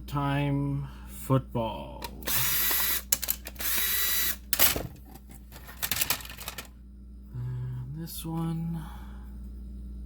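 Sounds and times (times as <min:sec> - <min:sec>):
power driver whirring: 0:02.2 - 0:04.8.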